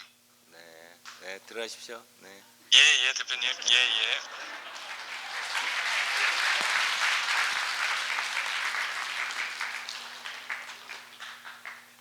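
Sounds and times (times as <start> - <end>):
audience applauding: 3.9 - 12.0.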